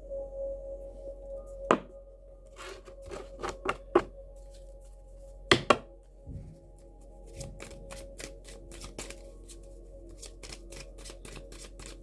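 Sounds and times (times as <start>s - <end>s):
ambient music drone: 0.0s - 12.0s
cards shuffling: 2.6s - 4.1s, 7.2s - 12.0s.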